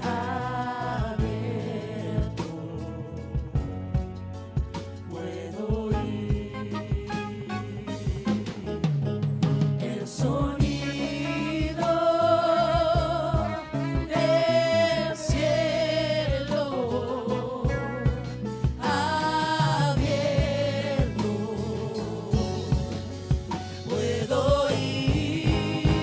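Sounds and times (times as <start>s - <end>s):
band with drums and bass: 0.0s - 26.0s
person singing with vibrato: 5.1s - 9.0s, 9.6s - 26.0s.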